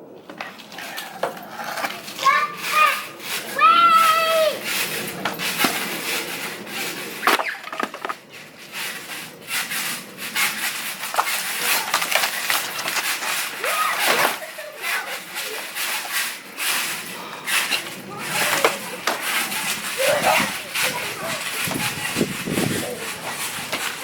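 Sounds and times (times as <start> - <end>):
wood knocking and scraping: 4.7 - 14.5, 15.2 - 24.0.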